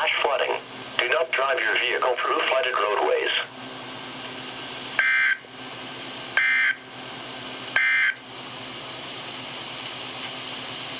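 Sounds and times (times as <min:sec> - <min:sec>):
radio hiss: 0:00.0 - 0:03.6.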